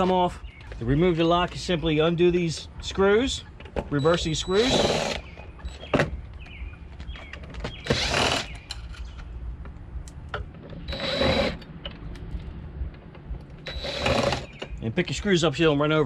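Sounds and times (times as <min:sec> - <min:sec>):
power drill whirring: 0:04.4 - 0:05.3, 0:07.8 - 0:08.6, 0:10.9 - 0:11.6, 0:13.6 - 0:14.6.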